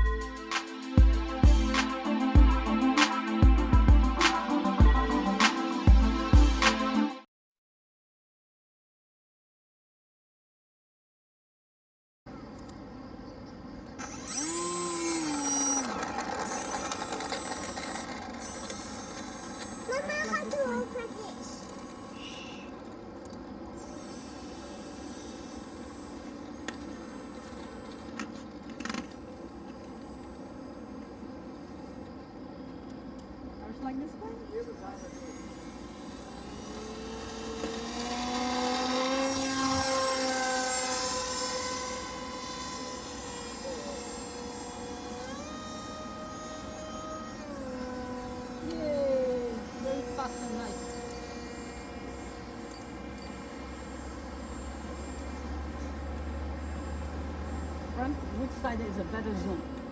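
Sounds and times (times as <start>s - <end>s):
electric motor propeller whine: 0.0s - 7.2s, 13.9s - 32.5s, 33.1s - 59.9s.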